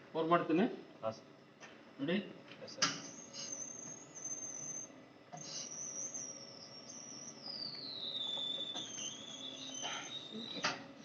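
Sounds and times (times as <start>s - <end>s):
high-pitched whine: 3.1s - 11.0s.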